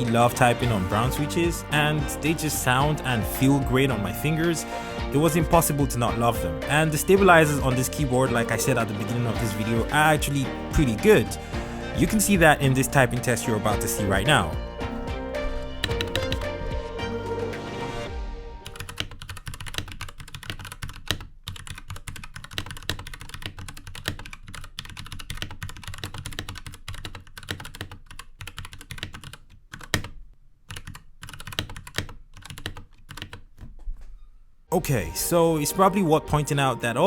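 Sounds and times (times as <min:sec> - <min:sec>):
background music: 0:00.0 - 0:19.2, 0:34.7 - 0:37.0
mechanical keyboard typing: 0:18.7 - 0:33.7.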